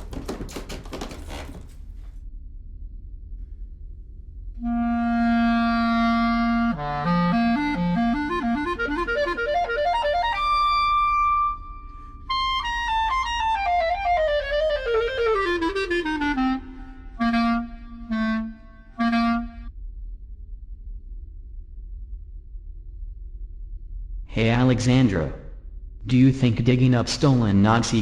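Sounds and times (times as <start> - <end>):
solo instrumental music: 4.6 - 19.7.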